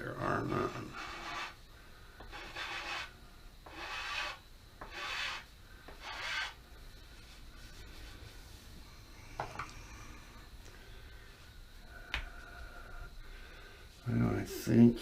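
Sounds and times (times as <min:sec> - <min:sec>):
hand tool scraping wood: 0:00.3 - 0:01.6, 0:02.2 - 0:06.6.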